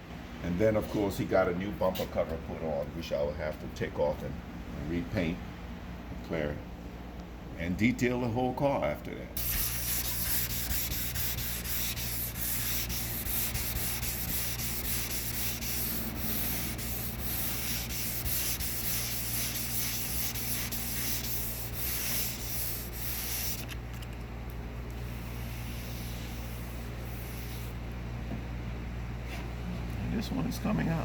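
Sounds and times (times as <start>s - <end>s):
low steady hum: 0.0s - 31.0s
sanding rasping hiss: 9.4s - 23.7s.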